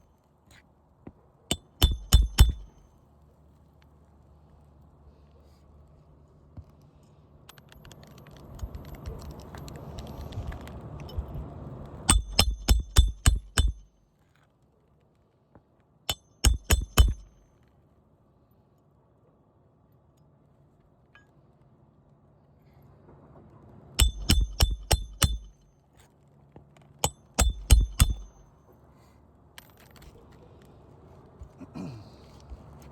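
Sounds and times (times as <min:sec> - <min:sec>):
hammer ringing on steel tool: 0:01.5 - 0:02.8, 0:12.1 - 0:13.9, 0:16.1 - 0:17.4, 0:24.0 - 0:25.7, 0:27.0 - 0:28.5.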